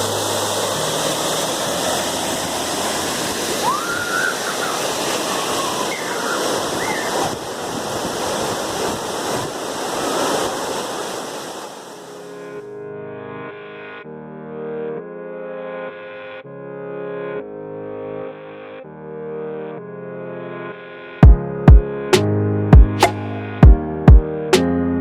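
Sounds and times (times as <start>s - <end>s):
waterfall rushing: 0.0s - 12.6s
rising-and-falling whistles: 3.6s - 7.4s.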